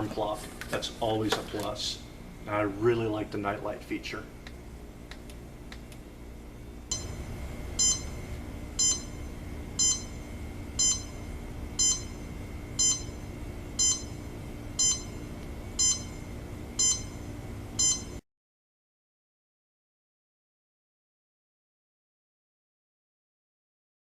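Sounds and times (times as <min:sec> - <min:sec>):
alarm clock beeping: 0:06.9 - 0:18.2.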